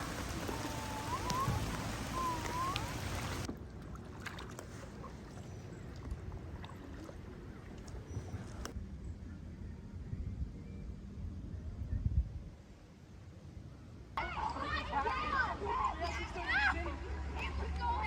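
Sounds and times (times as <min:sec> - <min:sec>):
gliding whistled calls: 0:00.0 - 0:03.5.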